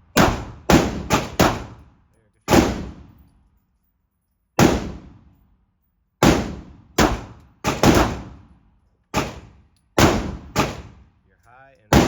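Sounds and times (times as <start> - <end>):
gunshots cracking: 0.1 - 1.8, 2.5 - 3.1, 4.6 - 5.1, 6.2 - 8.4, 9.2 - 11.0.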